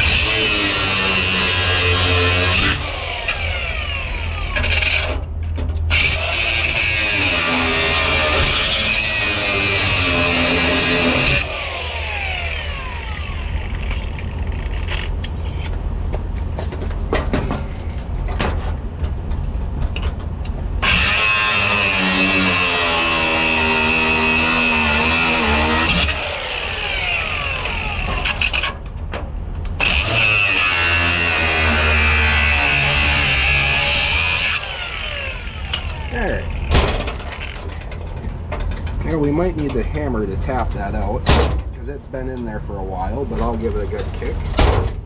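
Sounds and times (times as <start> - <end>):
cutoff wheel whining: 0.0 - 5.3, 5.9 - 15.7, 20.8 - 28.9, 29.7 - 38.0.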